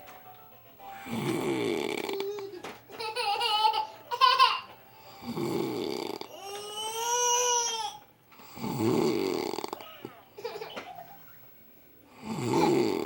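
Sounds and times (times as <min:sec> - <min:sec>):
man snoring: 0:01.1 - 0:02.3, 0:05.1 - 0:06.4, 0:08.4 - 0:09.8, 0:12.1 - 0:13.0.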